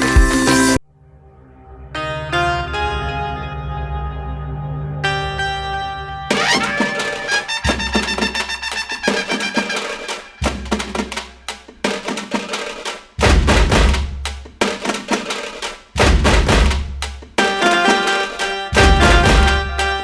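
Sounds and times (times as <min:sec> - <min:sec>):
melodic instruments: 0:02.2 - 0:11.2, 0:17.4 - 0:20.0
heavy drum beat: 0:06.4 - 0:20.0.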